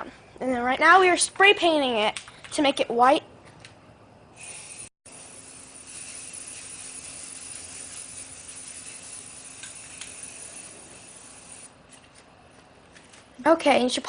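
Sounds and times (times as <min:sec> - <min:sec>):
spray paint can hissing: 0:04.4 - 0:11.8.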